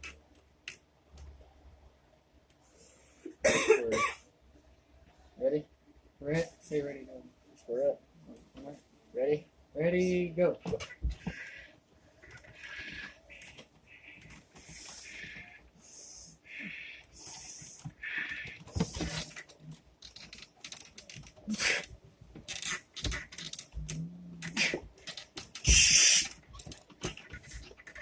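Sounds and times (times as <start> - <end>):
hissing breaths and wheezes: 11.0 - 19.7, 23.8 - 28.0
knocks and rustles: 17.6 - 28.0.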